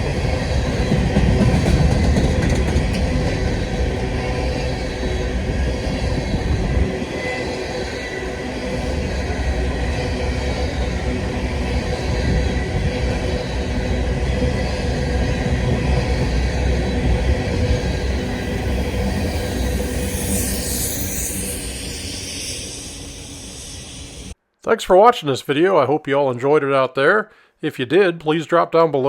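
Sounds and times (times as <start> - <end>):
train wheels rumbling on rail: 0.0 - 24.4.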